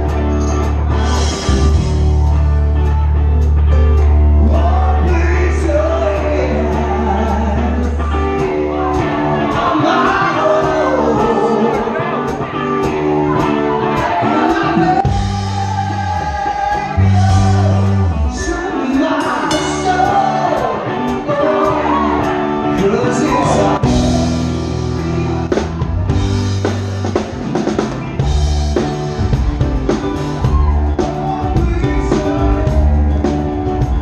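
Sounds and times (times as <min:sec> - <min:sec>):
held bass notes: 0:00.0 - 0:34.0
live rock band playing: 0:00.0 - 0:34.0
lead vocal singing: 0:04.3 - 0:26.2, 0:30.2 - 0:34.0.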